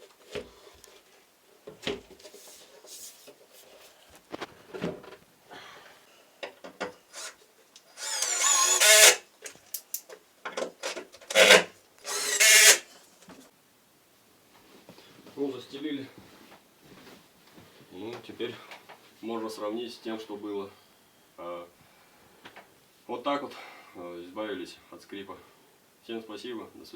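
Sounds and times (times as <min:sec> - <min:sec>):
bedding rustling: 0:02.0 - 0:05.8.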